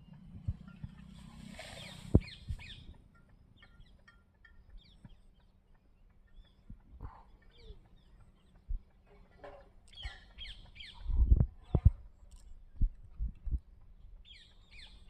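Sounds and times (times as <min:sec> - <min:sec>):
birds chirping: 0:00.0 - 0:15.0
rustling hiss: 0:01.1 - 0:02.7.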